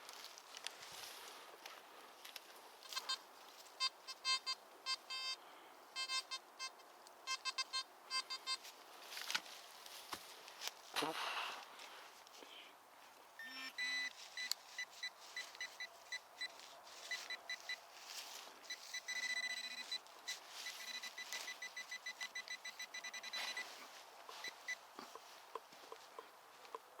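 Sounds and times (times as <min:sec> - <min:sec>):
metal detector high beeps: 0:02.9 - 0:03.2, 0:03.8 - 0:05.4, 0:06.0 - 0:06.7, 0:07.3 - 0:08.6, 0:13.4 - 0:17.8, 0:18.6 - 0:24.8
metal detector low tones: 0:13.4 - 0:14.5, 0:18.6 - 0:24.8.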